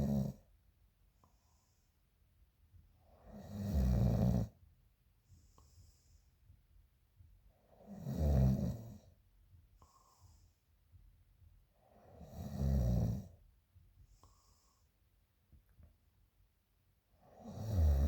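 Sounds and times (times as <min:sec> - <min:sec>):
woman snoring loudly: 0:03.4 - 0:04.5, 0:12.3 - 0:13.2, 0:17.4 - 0:18.0.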